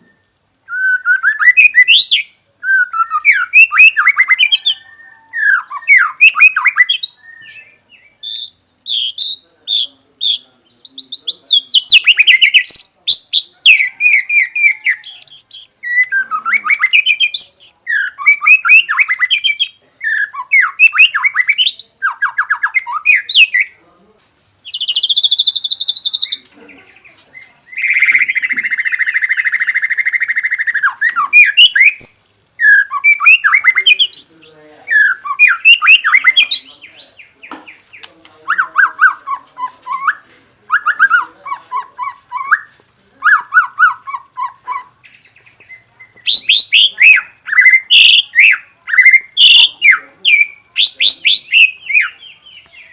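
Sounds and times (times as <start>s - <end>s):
songbird singing whistles and chirps: 0.0s - 52.9s
buzzy bird trill: 24.4s - 37.0s.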